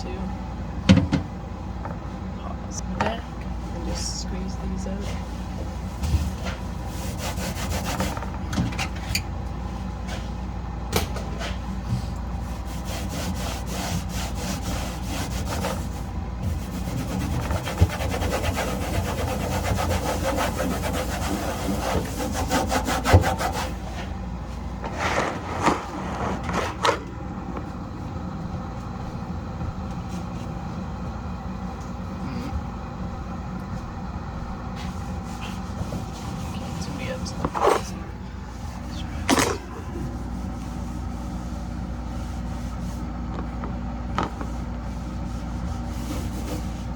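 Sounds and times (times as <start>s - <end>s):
knocks against fridge: 0.9s - 1.3s
cloth rubbing inside fridge: 2.1s - 10.6s, 11.2s - 46.9s.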